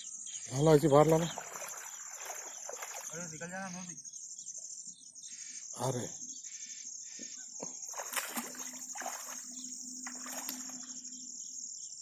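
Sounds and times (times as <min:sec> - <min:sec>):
insects chirring: 0:00.0 - 0:12.0
water splashing and sloshing: 0:00.8 - 0:03.4, 0:07.9 - 0:10.9.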